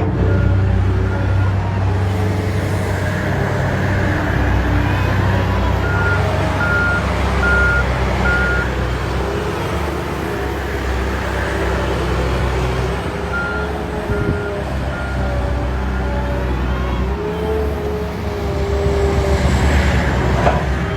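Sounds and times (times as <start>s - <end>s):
diesel machinery running: 0.0s - 20.9s
reversing alarm beeping: 5.4s - 8.8s.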